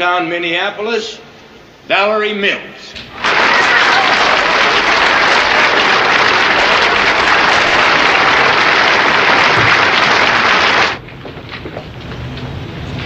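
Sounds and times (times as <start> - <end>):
audience applauding: 3.1 - 11.0.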